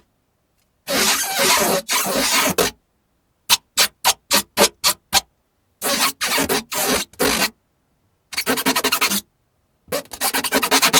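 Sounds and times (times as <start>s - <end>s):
scratching rasping strokes: 10.0s - 10.9s.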